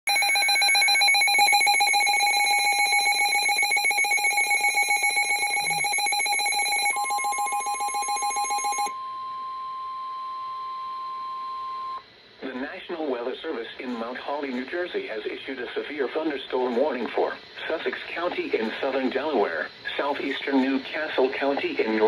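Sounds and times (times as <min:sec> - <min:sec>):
steady alert tone: 0:00.1 - 0:08.9
pulsing electronic alarm: 0:00.1 - 0:12.0.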